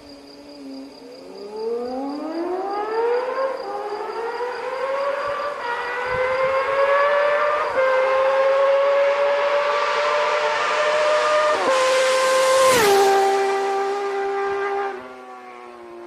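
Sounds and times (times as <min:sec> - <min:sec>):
motorcycle engine revving: 0:02.8 - 0:15.6.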